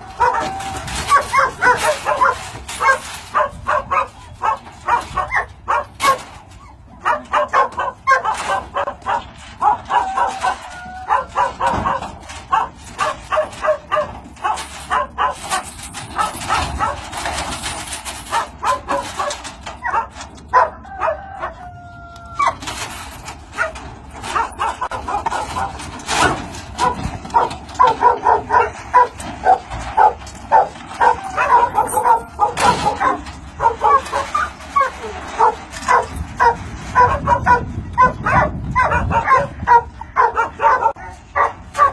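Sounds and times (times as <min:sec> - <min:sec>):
dog whining: 0:00.0 - 0:03.0, 0:03.9 - 0:07.4, 0:09.6 - 0:12.0, 0:18.3 - 0:22.9, 0:26.8 - 0:41.9
dogs barking: 0:00.0 - 0:41.9.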